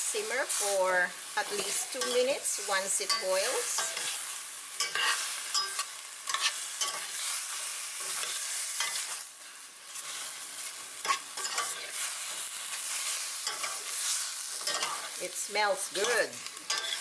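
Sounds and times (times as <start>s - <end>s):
pan sizzling: 0.0s - 17.0s
utensil scraping a pan: 4.8s - 9.2s, 10.0s - 15.2s, 16.0s - 17.0s.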